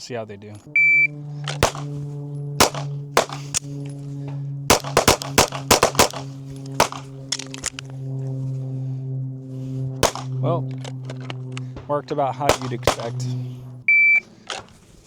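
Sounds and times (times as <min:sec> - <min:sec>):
low steady hum: 0:00.0 - 0:15.0
pistol shots: 0:01.4 - 0:01.9, 0:02.6 - 0:03.6, 0:04.7 - 0:07.6, 0:10.0 - 0:10.4, 0:12.5 - 0:13.3.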